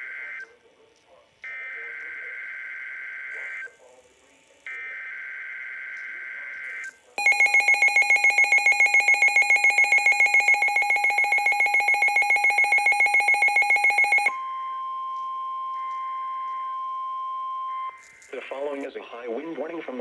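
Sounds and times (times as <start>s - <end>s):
rapid alarm beeping: 6.7s - 18.0s
steady single-pitch alert tone: 7.2s - 18.0s.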